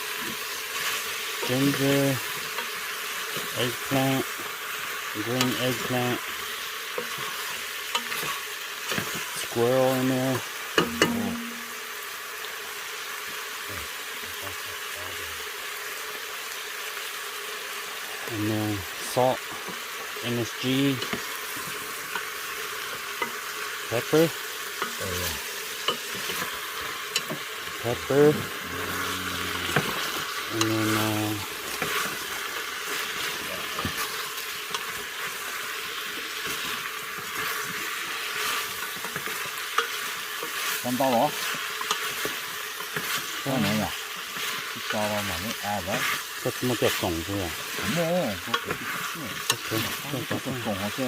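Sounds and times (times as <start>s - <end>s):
food sizzling in hot oil: 0.0s - 51.0s
utensil clicking on pan: 6.3s - 9.2s, 10.7s - 11.8s, 24.6s - 25.0s, 25.8s - 27.5s, 31.6s - 40.8s, 41.4s - 43.3s, 48.5s - 49.8s.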